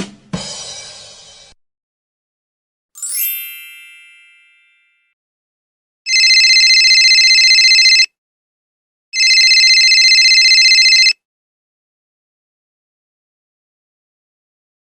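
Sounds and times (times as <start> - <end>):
telephone bell ringing: 6.1 - 8.2, 9.2 - 11.2.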